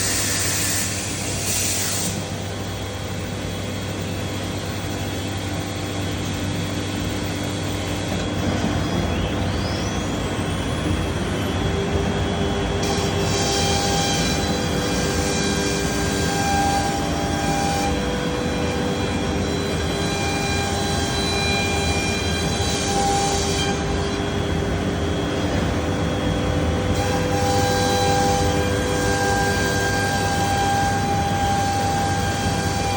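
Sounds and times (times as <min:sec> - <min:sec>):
hissing wood cutting noise: 0:00.0 - 0:11.0
router machine drone: 0:00.0 - 0:32.9.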